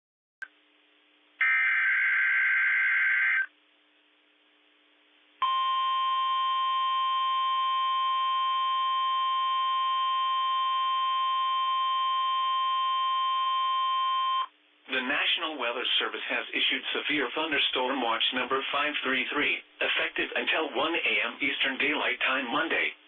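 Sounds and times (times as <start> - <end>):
steady warning alarm tone: 1.4 - 3.5, 5.4 - 14.5.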